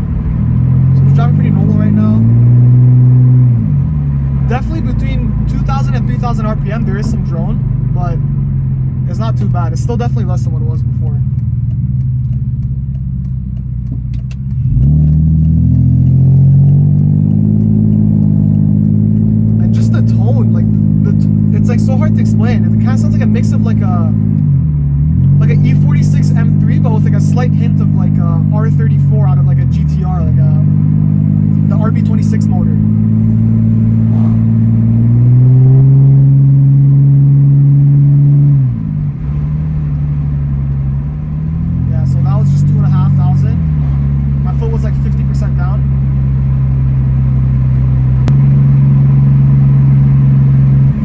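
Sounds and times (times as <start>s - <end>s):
car exhaust droning: 0.0s - 51.0s.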